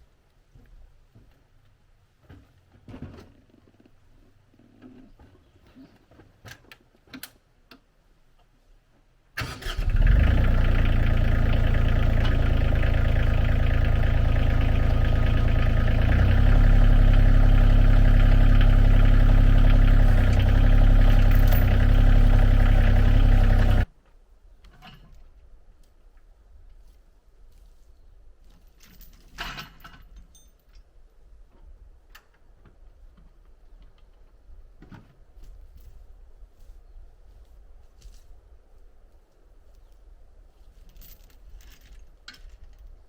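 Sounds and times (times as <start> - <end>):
motor engine running: 9.6 - 23.9.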